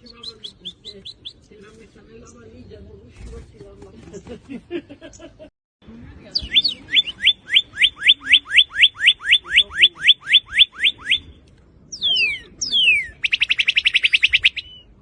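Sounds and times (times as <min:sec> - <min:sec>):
bird singing whistles and trill: 0:06.4 - 0:14.9.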